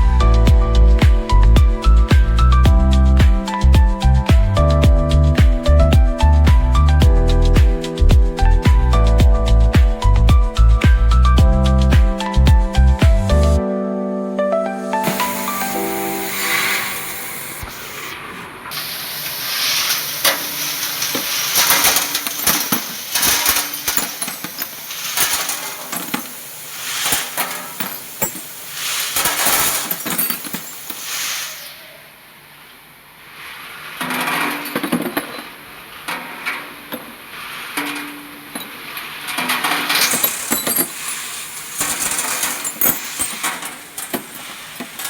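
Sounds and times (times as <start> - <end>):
metal parts clattering: 19.9 - 31.2, 37.8 - 45.0.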